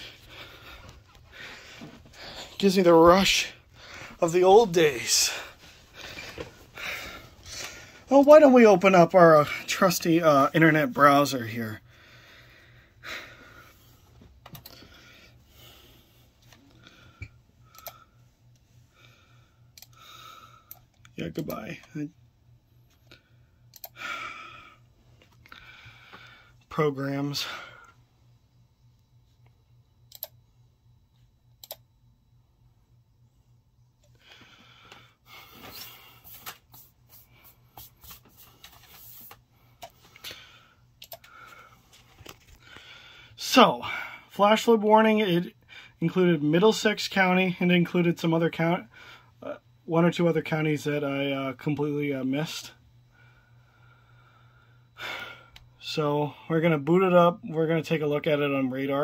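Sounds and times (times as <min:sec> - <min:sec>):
computer keyboard keystrokes: 0:17.7 - 0:18.0, 0:23.8 - 0:24.0, 0:30.1 - 0:30.4, 0:31.6 - 0:31.8, 0:41.0 - 0:41.3
sharp clicks: 0:23.7 - 0:24.0, 0:30.1 - 0:30.4, 0:31.6 - 0:31.9, 0:41.0 - 0:41.3.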